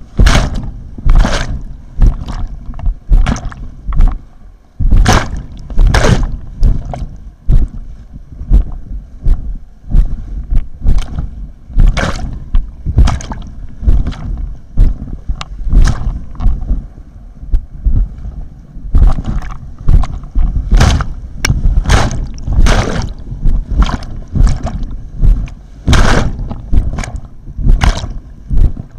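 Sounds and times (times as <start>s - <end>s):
paddle splashing with thumps: 0.2s - 2.5s, 3.1s - 4.2s, 4.9s - 7.1s, 13.0s - 14.3s, 19.0s - 23.2s.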